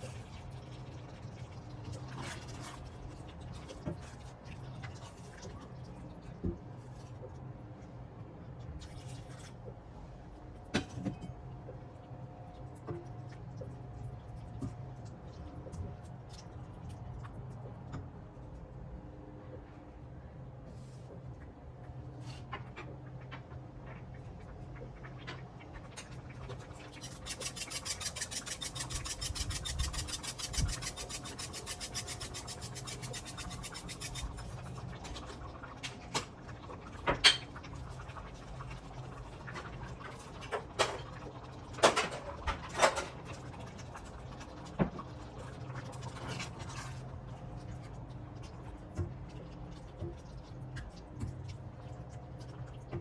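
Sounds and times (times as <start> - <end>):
quick even kitchen strokes: 27.0 - 34.6.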